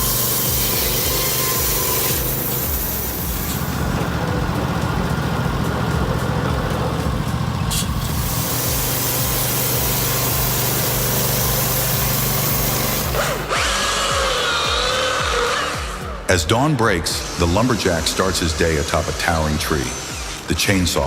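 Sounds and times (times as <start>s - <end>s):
engine running: 0.0s - 21.0s.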